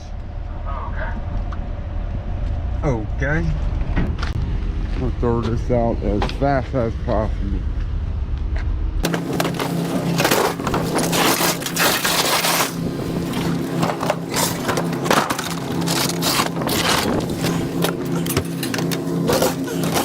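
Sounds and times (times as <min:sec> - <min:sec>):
steady machine hum: 0:00.0 - 0:20.0
scrap metal crashing onto pile: 0:09.4 - 0:15.6.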